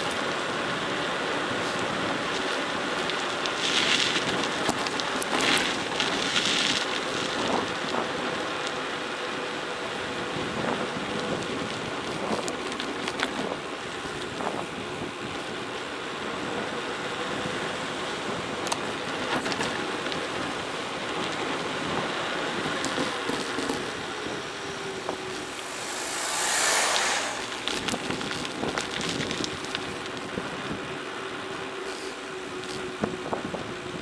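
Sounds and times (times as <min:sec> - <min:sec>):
wind on microphone: 0:21.8 - 0:30.9.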